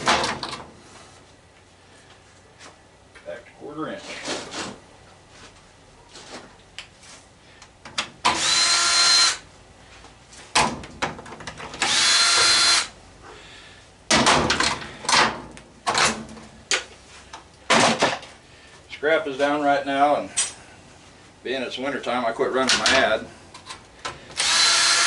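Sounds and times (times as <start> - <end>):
power drill whining: 8.3 - 9.4, 11.8 - 12.9, 24.4 - 25.0.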